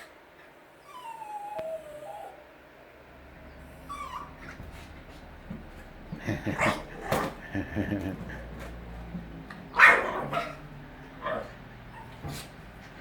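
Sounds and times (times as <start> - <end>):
puppy whining: 0.8 - 2.5, 3.5 - 4.6, 11.2 - 12.5.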